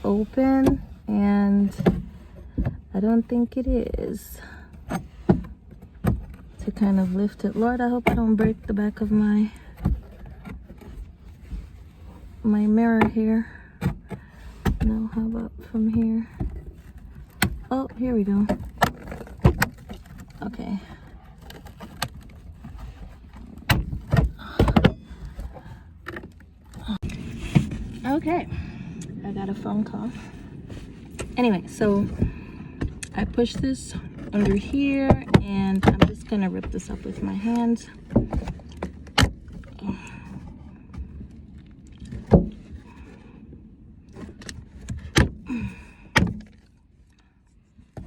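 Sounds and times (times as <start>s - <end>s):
plastic crackling and scraping: 0.0s - 48.0s
low rumble: 22.2s - 47.2s.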